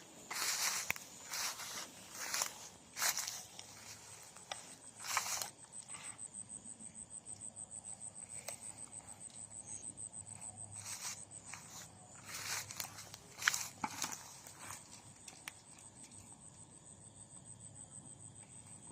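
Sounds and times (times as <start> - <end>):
rustling footsteps: 0.0 - 5.5, 10.8 - 15.2
insect pulsing trill: 0.0 - 18.9.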